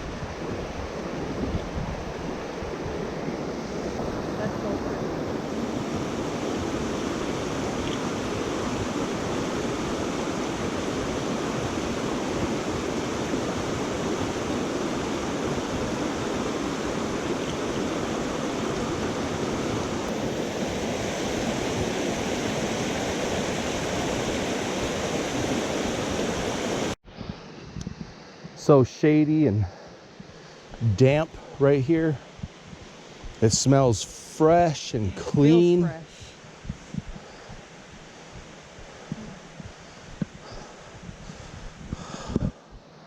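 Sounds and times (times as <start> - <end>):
creek water rushing over rocks: 0.0 - 27.0.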